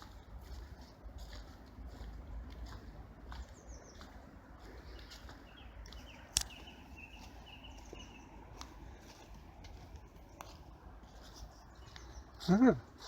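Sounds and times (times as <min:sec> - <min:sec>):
small birds chirping: 0:00.0 - 0:13.0
sharp click: 0:06.3 - 0:06.6.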